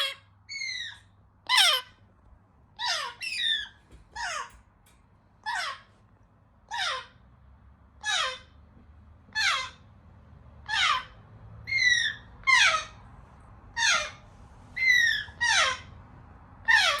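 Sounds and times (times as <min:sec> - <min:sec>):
parrot chicks begging calls: 0:00.0 - 0:02.0, 0:02.8 - 0:04.6, 0:05.4 - 0:05.9, 0:06.7 - 0:07.2, 0:08.0 - 0:08.5, 0:09.3 - 0:09.8, 0:10.6 - 0:13.0, 0:13.8 - 0:14.2, 0:14.8 - 0:16.0, 0:16.6 - 0:17.0.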